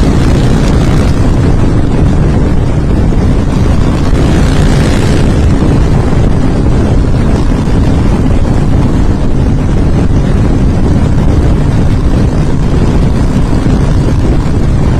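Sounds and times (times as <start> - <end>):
motorcycle engine running: 0.0 - 14.9.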